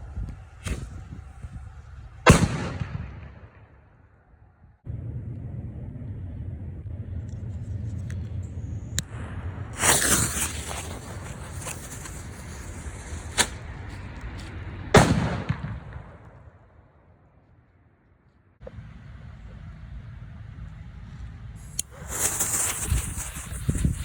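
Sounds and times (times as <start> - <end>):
low rumble: 0.0 - 16.7
firecrackers banging and crackling: 21.6 - 24.0.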